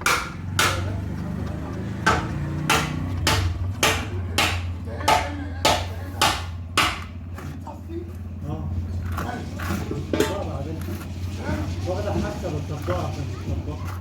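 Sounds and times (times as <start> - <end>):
sharp metallic knocks: 0.0 - 7.3.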